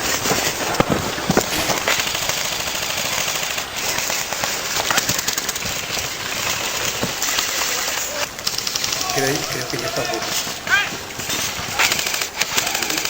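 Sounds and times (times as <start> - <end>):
airsoft guns firing: 0.2 - 13.0.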